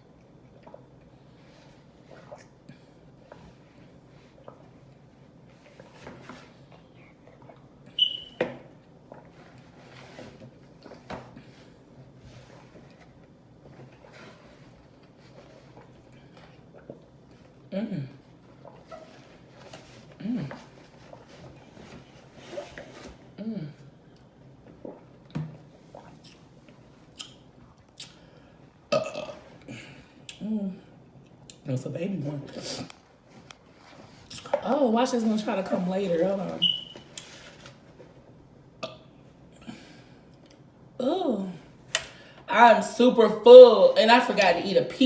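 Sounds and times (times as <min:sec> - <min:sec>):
shell squeak: 0:08.0 - 0:08.4
wet mouth smacks: 0:27.2 - 0:28.2.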